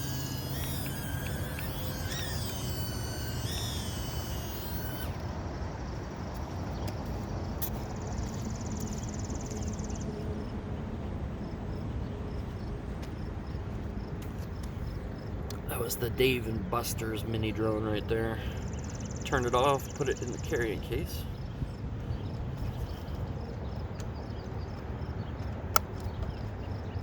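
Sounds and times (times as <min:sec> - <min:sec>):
small drone motors whining: 0:00.0 - 0:10.0, 0:18.2 - 0:23.4
outdoor background noise: 0:00.0 - 0:27.0.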